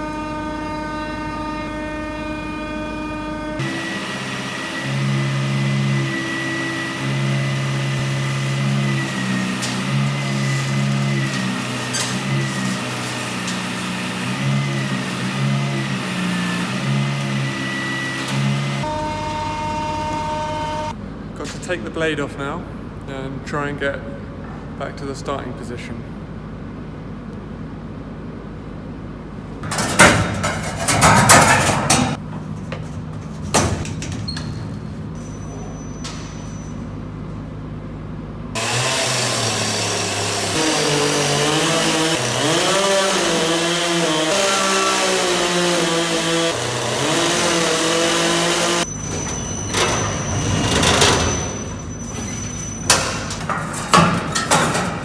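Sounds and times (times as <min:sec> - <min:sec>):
sawmill engine running: 0:00.0 - 0:24.0, 0:29.6 - 0:36.3, 0:37.1 - 0:55.0
metallic knocks and clatter: 0:29.6 - 0:35.2, 0:48.8 - 0:55.0.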